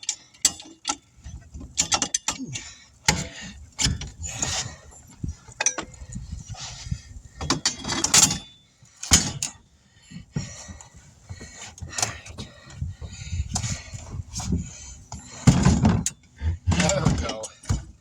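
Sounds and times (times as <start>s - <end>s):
metal clanks and knocks: 0.1s - 6.1s, 7.4s - 9.6s, 10.2s - 18.0s.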